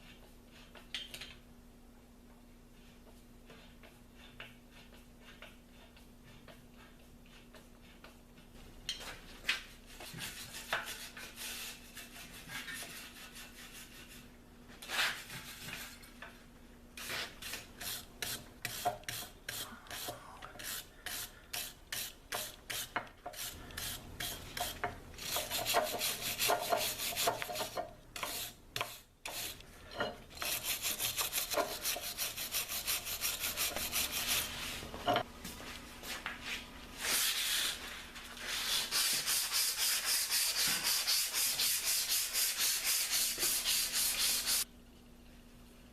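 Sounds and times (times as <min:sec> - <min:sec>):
sandpaper scraping metal: 0:17.0 - 0:29.6, 0:30.4 - 0:34.9, 0:37.0 - 0:44.6.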